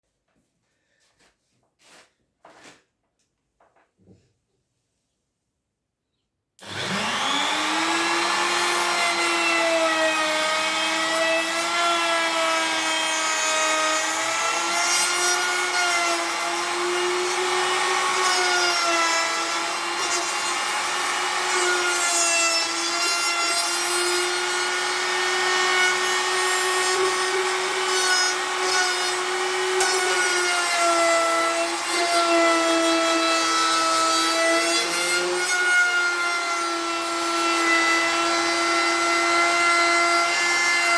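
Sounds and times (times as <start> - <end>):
power tool motor whining: 6.6 - 9.8, 13.4 - 23.0, 23.6 - 30.4.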